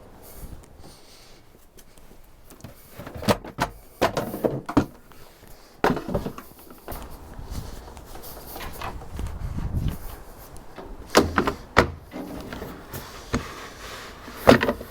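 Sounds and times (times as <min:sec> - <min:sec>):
wood knocking and clattering: 0:02.6 - 0:05.1, 0:05.8 - 0:07.2, 0:10.7 - 0:13.6, 0:14.3 - 0:14.9.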